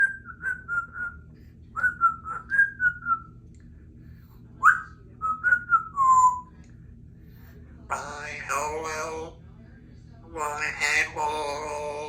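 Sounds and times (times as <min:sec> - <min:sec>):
parrot whistling: 0:00.0 - 0:01.2, 0:01.8 - 0:03.3, 0:04.6 - 0:06.5.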